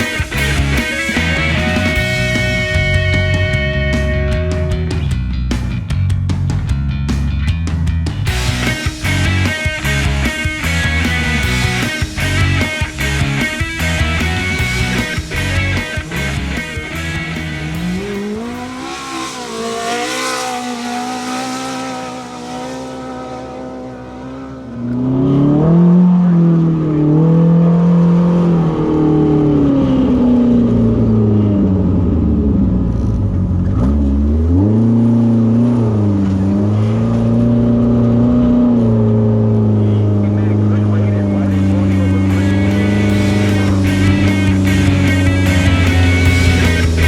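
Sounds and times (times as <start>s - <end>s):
rock music: 0.0s - 24.8s, 40.4s - 47.0s
racing engine revving: 0.0s - 47.0s.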